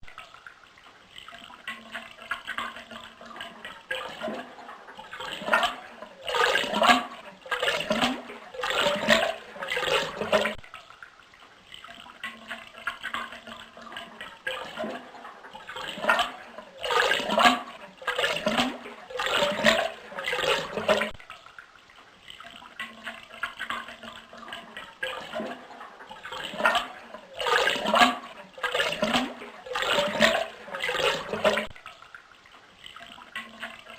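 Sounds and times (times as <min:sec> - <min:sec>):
toilet flushing: 0:01.6 - 0:10.6, 0:12.3 - 0:21.2, 0:22.8 - 0:31.7.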